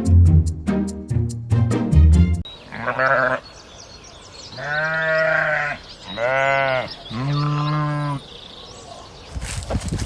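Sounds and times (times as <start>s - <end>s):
farm animal bleating: 2.6s - 3.5s, 4.5s - 8.3s.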